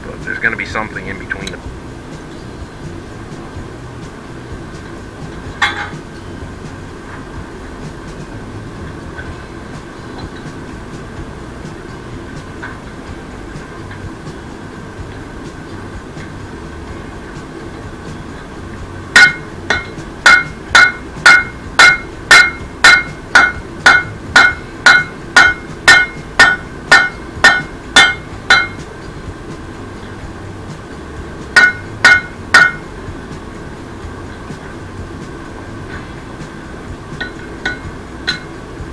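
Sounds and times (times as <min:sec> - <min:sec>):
hammer striking metal on anvil: 0:05.3 - 0:06.1, 0:19.1 - 0:28.9, 0:31.5 - 0:32.9, 0:37.2 - 0:38.6.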